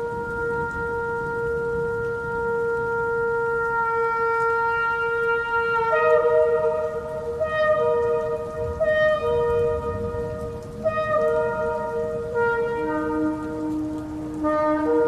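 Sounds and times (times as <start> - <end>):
shofar blast: 0.0 - 15.0.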